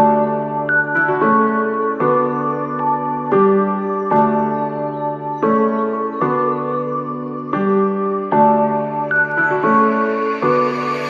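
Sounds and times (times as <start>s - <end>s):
slow sustained music chords: 8.6s - 11.0s.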